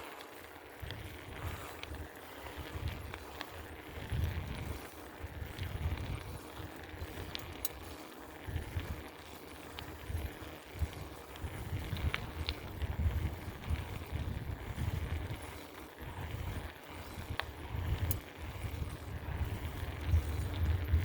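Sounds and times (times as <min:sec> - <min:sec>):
bike clicks and rattles: 0:00.0 - 0:21.0
rolling road noise: 0:00.0 - 0:21.0
wind buffeting microphone: 0:00.0 - 0:21.0.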